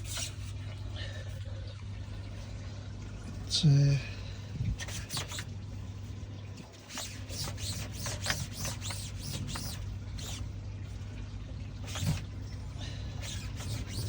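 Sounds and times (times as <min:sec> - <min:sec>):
high squeaks and scrapes: 0:00.0 - 0:00.5, 0:04.8 - 0:05.5, 0:06.7 - 0:10.5, 0:11.8 - 0:12.3, 0:13.2 - 0:14.0
steady low hum: 0:00.0 - 0:14.0.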